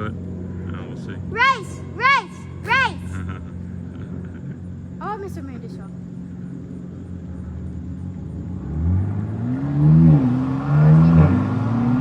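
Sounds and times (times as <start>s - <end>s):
car engine accelerating hard: 6.6s - 12.0s.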